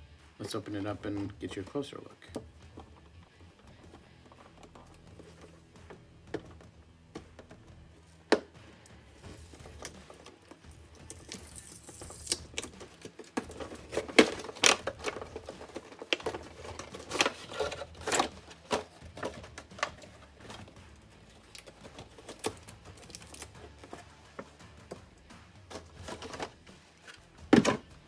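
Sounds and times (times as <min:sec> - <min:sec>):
cardboard and plastic crinkling: 0:09.1 - 0:25.0, 0:25.6 - 0:27.9.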